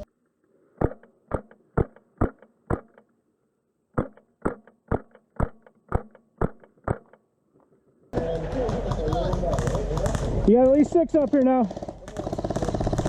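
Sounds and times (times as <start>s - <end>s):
airsoft rifle shots: 0.8s - 3.1s, 4.0s - 7.2s, 8.2s - 13.0s.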